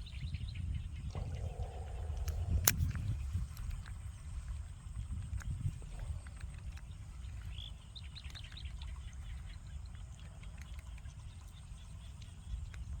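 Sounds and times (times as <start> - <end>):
bird chirps: 0.0 - 2.9
steady low rumble: 0.0 - 7.7
faint clicks: 1.1 - 4.6.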